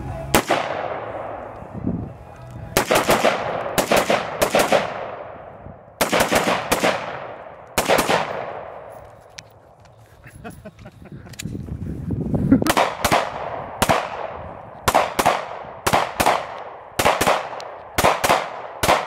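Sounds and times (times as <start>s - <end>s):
gunshots with long echo: 0.3s - 1.6s, 2.8s - 9.1s, 12.7s - 19.0s.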